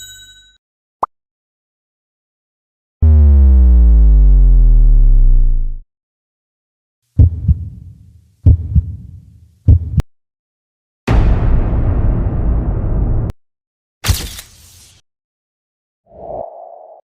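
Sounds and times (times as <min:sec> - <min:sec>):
low synthesized tone sliding down: 0:03.0 - 0:05.8
heavy heartbeat-style thumps: 0:07.2 - 0:07.8, 0:08.4 - 0:09.0, 0:09.7 - 0:10.0.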